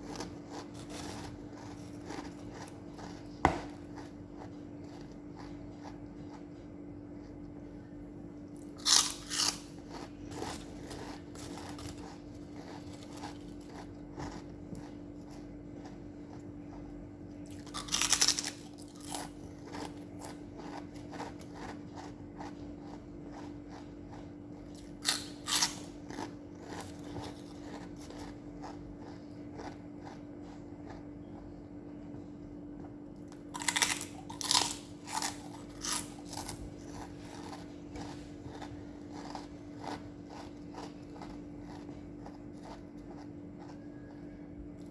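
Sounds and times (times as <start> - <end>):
person chewing crunchy food: 0.0 - 44.9
steady low hum: 0.0 - 44.9.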